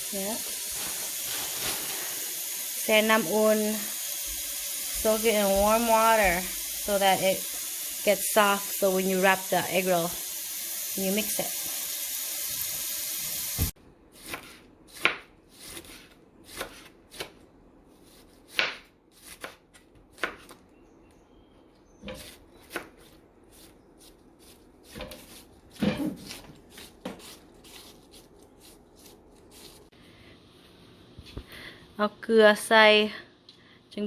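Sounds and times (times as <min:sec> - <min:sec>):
kitchen tap running: 0:00.1 - 0:13.8
knife chopping on cutting board: 0:14.2 - 0:17.4, 0:18.0 - 0:20.6, 0:22.1 - 0:29.8.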